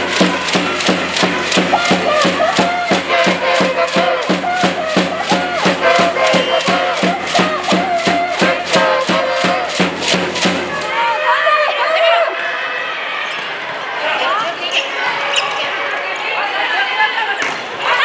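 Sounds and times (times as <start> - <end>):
fast sharp clapping: 0.0 - 10.9
crowd chanting and singing: 0.0 - 11.7.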